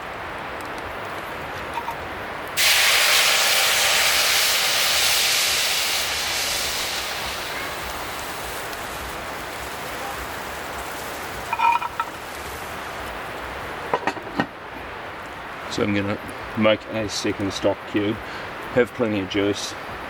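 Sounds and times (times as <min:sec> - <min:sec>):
steam hissing: 0:02.6 - 0:13.0.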